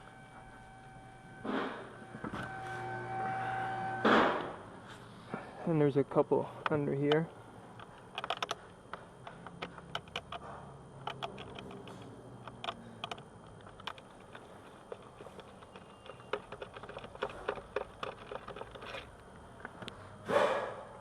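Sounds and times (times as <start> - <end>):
screwdriver clicks and taps: 8.2 - 8.6, 11.0 - 19.0.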